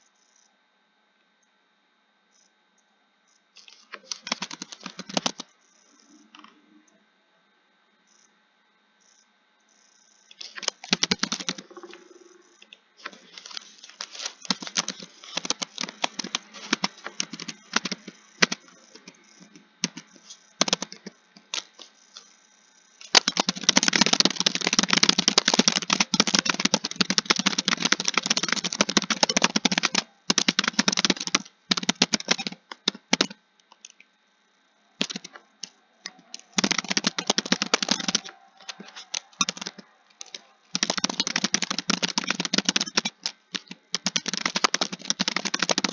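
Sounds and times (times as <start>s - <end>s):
typing on computer keyboard: 3.6s - 5.5s, 10.3s - 22.3s, 23.0s - 34.0s, 35.0s - 45.9s.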